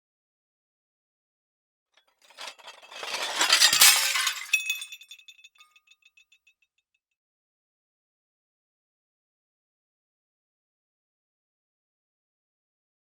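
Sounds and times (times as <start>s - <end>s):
glass shards clinking: 2.3s - 5.3s
glass shattering: 2.3s - 5.3s.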